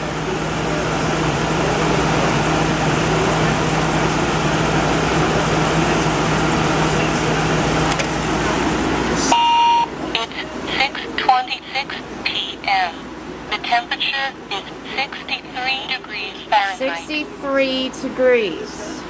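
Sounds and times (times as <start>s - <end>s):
air conditioner running: 0.0s - 19.0s
high beep: 9.3s - 9.9s.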